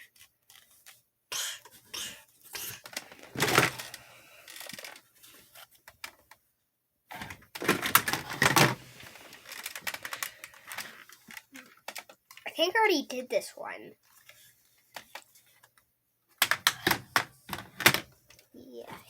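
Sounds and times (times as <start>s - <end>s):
toy weapons knocking and rattling: 2.6s - 5.0s, 7.2s - 12.4s, 16.4s - 18.4s.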